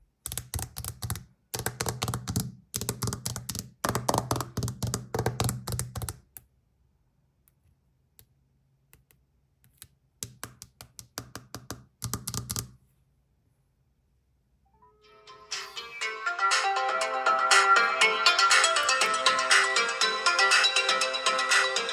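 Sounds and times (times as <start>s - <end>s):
keyboard typing: 0.3s - 6.3s, 9.0s - 12.8s.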